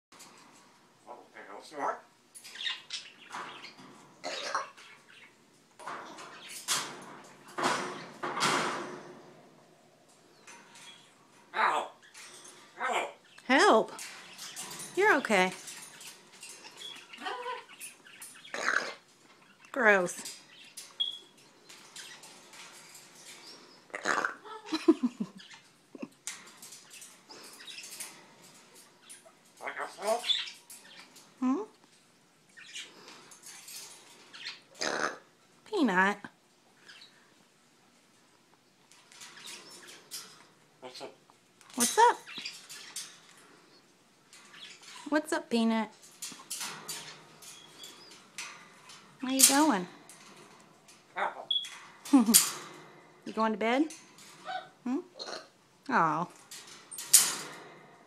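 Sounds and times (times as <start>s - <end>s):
parrot making rough vocal noises: 18.5s - 19.0s, 23.9s - 24.7s, 34.7s - 35.3s, 54.4s - 55.6s.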